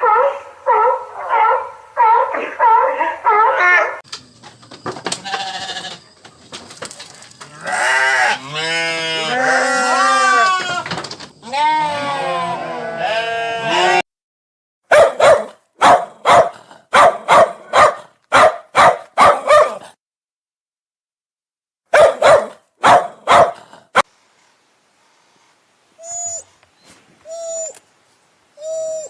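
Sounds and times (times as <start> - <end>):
sharp bark-like animal calls: 0.0 - 4.0, 14.9 - 20.0, 21.9 - 24.1
wavering bleating animal call: 5.2 - 6.0, 7.5 - 14.0.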